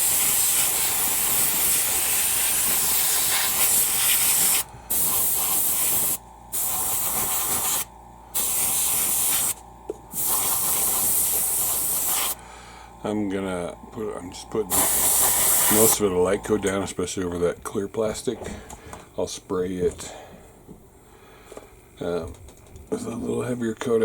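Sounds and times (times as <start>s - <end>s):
airbrush spraying hiss: 0.0s - 12.4s, 14.7s - 16.0s.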